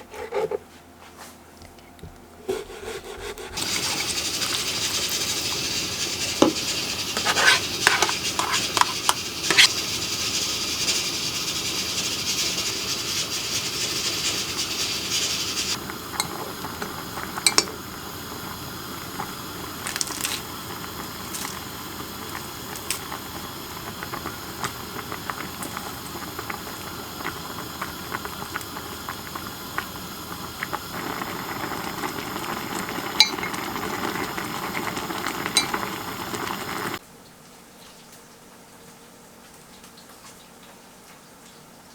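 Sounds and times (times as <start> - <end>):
food sizzling in a pan: 3.6 - 37.0.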